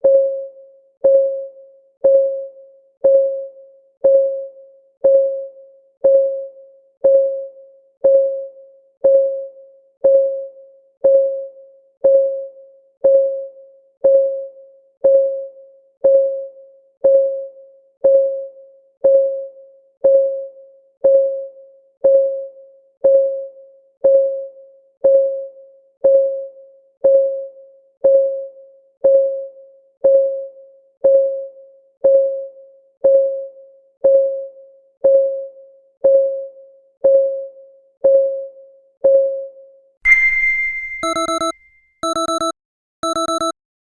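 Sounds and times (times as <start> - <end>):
clock ticking: 41.0 - 43.5.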